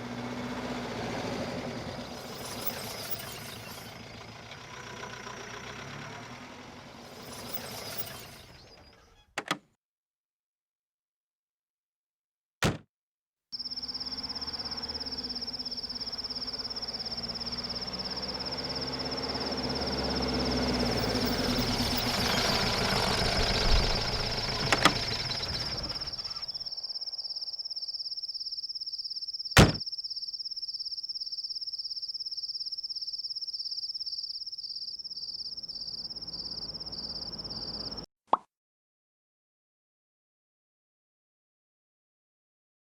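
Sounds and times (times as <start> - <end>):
car engine running: 0.0 - 9.0, 13.6 - 26.8, 35.7 - 38.0
crickets chirping: 1.6 - 4.0, 13.6 - 38.1
sharp knock: 29.6 - 29.8.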